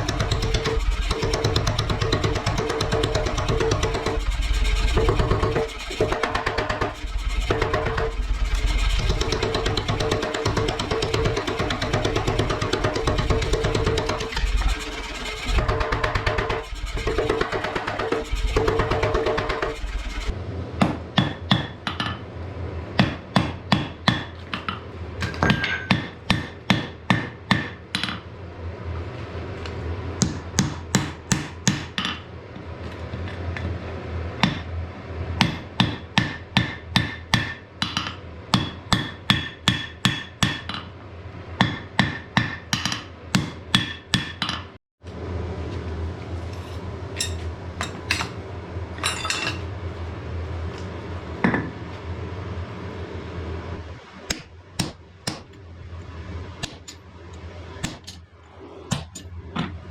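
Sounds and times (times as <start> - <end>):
hammer striking iron on anvil: 20.8 - 22.2, 23.0 - 28.2, 30.2 - 32.2, 35.4 - 40.9, 41.6 - 44.7, 47.2 - 48.4, 49.0 - 49.6, 54.3 - 55.5.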